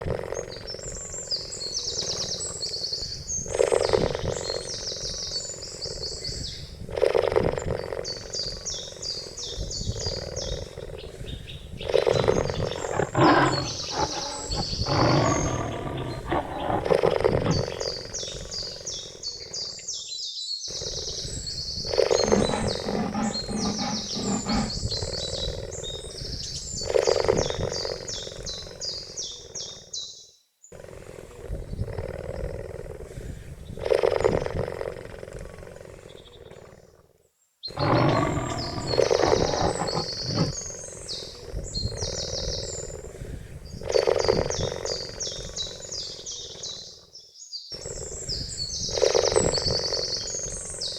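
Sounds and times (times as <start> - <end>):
cheetah calling: 12.1 - 17.8, 22.1 - 24.9, 37.8 - 40.6.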